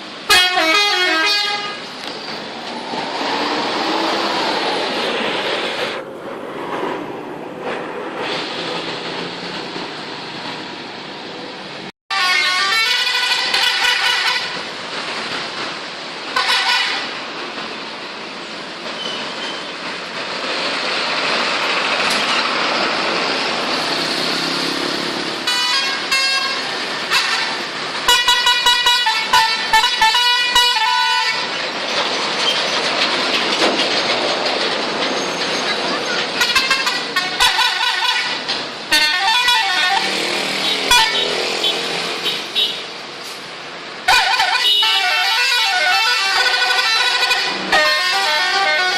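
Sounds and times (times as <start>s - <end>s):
traffic and engine noise: 0.0s - 48.9s
musical air horns: 0.3s - 1.8s, 12.1s - 14.6s, 16.4s - 17.1s, 25.4s - 31.5s, 36.4s - 40.1s, 44.1s - 48.9s.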